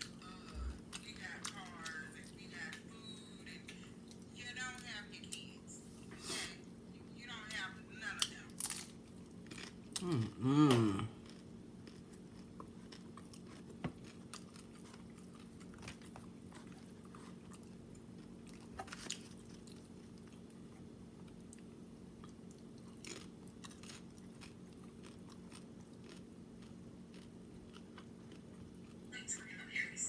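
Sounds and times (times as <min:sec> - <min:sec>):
chewing and crunching food: 0:00.0 - 0:05.4, 0:08.1 - 0:29.6
wet mouth sounds: 0:10.0 - 0:11.2.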